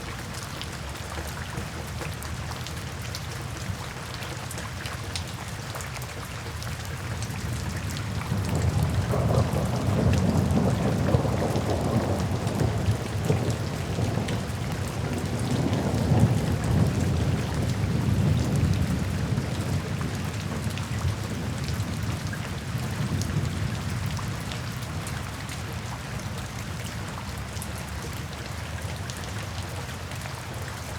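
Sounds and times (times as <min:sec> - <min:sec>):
steady rain falling: 0:00.0 - 0:30.9
thunder rumbling: 0:07.4 - 0:23.9.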